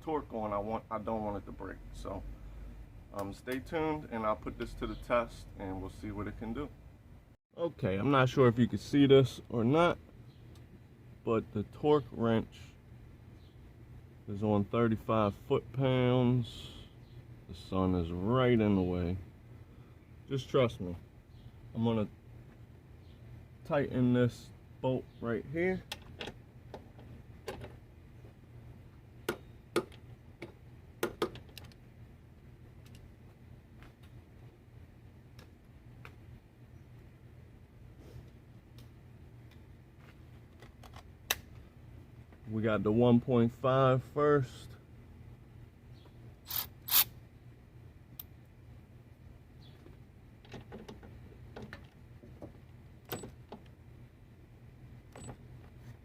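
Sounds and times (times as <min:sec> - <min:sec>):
steady low hum: 0:00.0 - 0:56.0
torque wrench clicking: 0:46.5 - 0:47.1.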